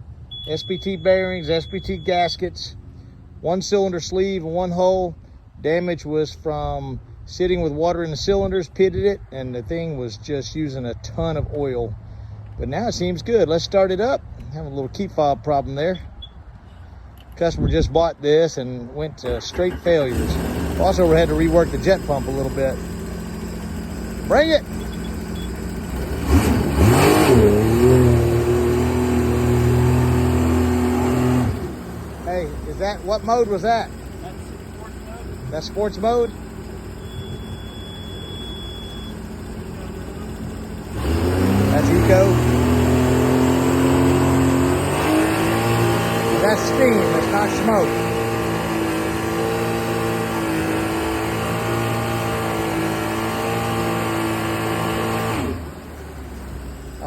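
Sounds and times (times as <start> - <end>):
engine revving: 19.2 - 57.0.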